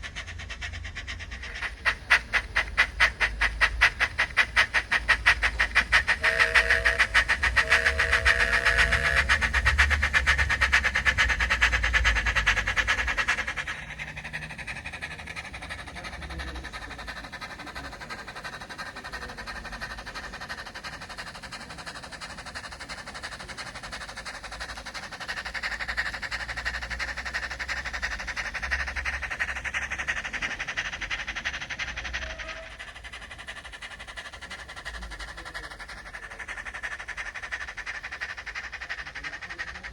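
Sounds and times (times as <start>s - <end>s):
model steam locomotive chuffing: 0.0s - 39.9s
train whistle toot: 6.1s - 9.5s.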